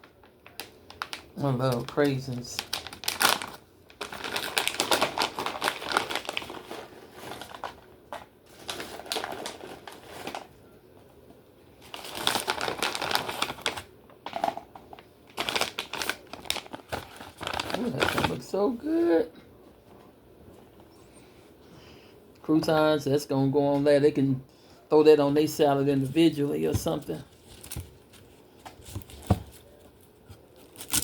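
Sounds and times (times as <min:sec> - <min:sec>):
plastic bag crinkling: 0:00.0 - 0:10.6, 0:11.8 - 0:19.0, 0:25.4 - 0:31.0.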